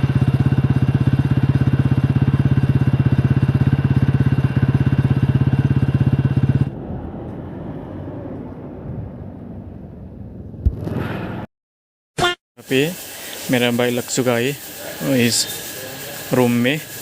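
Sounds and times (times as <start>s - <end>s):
motorcycle engine idling: 0.0s - 6.8s.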